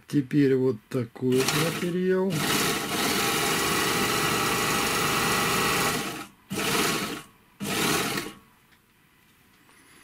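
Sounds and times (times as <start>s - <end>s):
overlock sewing machine running: 1.3s - 8.4s.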